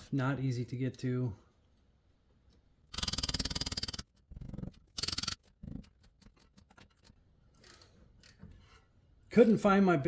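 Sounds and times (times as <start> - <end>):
ratchet clicking: 2.9 - 4.1, 5.0 - 5.4.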